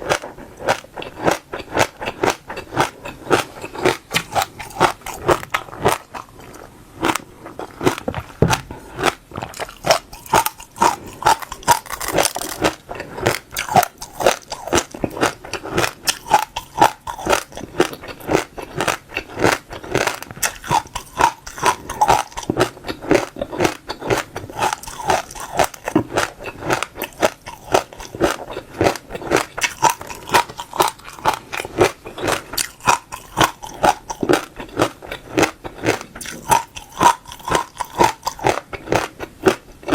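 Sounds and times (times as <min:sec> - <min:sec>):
chewing crunchy seeds: 0:00.0 - 0:39.9.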